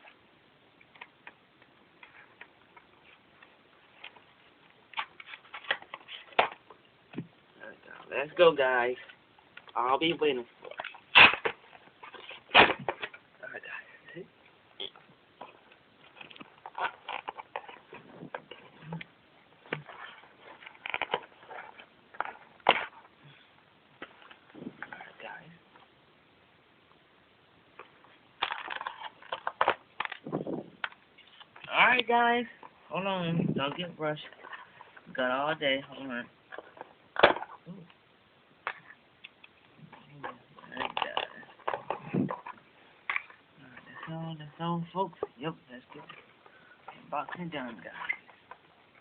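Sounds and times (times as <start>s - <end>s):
packaging crinkling and rustling: 15.4s - 23.2s, 27.8s - 32.9s, 40.0s - 49.0s.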